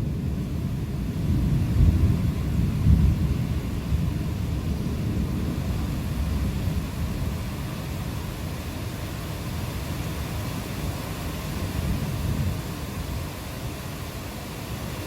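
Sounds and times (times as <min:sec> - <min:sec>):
thunder rumbling: 0:00.0 - 0:07.7
rain hiss: 0:00.0 - 0:15.0.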